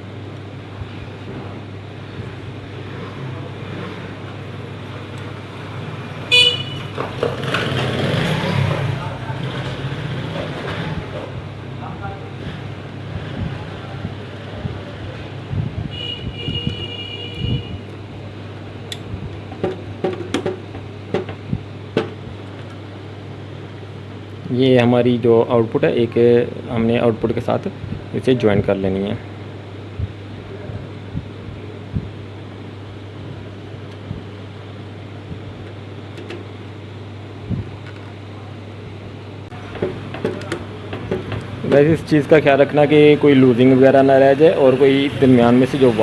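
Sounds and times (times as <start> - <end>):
steady low hum: 0.0 - 7.5, 8.2 - 46.0
clicks and taps of tools: 18.9 - 21.4, 39.7 - 41.5.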